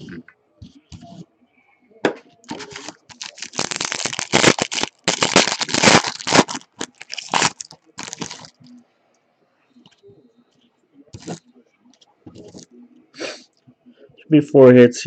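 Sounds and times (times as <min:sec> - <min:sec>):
wrapper tearing and crinkling: 0:02.5 - 0:08.6, 0:11.2 - 0:11.4.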